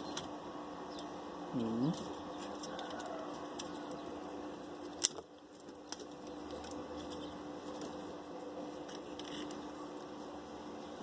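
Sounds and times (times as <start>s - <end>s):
wood fire crackling: 1.9s - 10.4s
fire popping: 4.6s - 6.8s.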